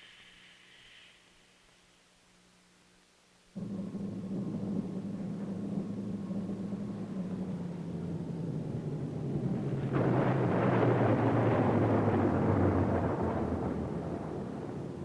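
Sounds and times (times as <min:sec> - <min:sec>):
low electronic hum: 0:03.5 - 0:09.6
rushing rumble: 0:03.6 - 0:15.0.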